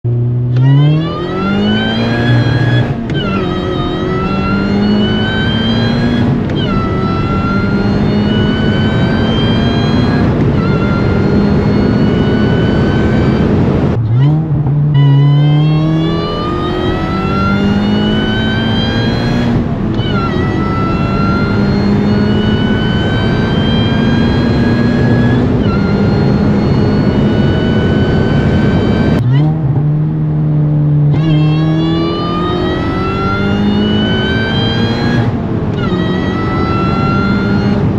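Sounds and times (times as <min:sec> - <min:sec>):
supercharged car engine revving: 0:00.1 - 0:37.9
supercharger whine: 0:00.1 - 0:37.9.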